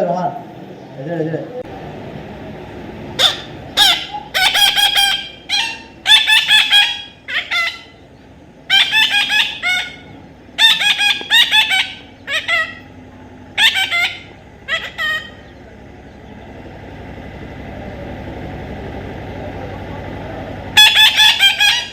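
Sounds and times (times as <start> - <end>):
parrot squawking: 3.2 - 15.6, 20.7 - 21.9.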